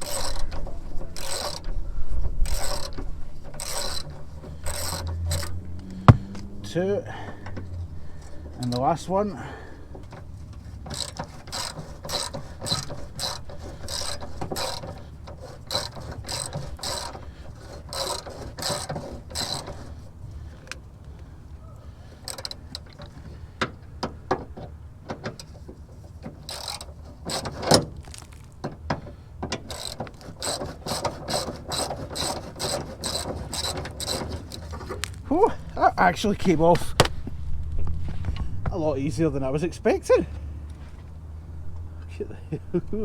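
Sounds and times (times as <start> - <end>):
ratchet wrench clicking: 0.0 - 1.7, 2.4 - 6.4, 10.9 - 19.8, 26.5 - 27.4, 29.7 - 35.2
sharp knock: 6.1 - 6.4.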